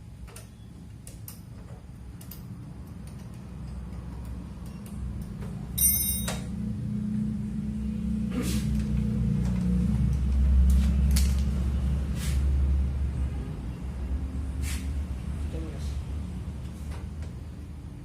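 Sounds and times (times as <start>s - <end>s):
metal clink: 5.8s - 6.5s.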